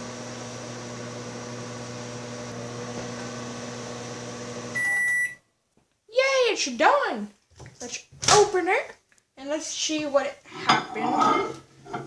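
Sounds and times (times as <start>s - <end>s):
microwave oven humming: 0.0s - 5.3s
microwave beep: 4.6s - 5.5s.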